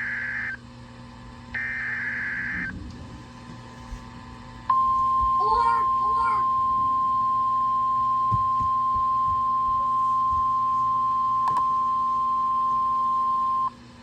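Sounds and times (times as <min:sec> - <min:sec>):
high-pitched alarm tone: 0:01.6 - 0:02.8, 0:04.7 - 0:13.7.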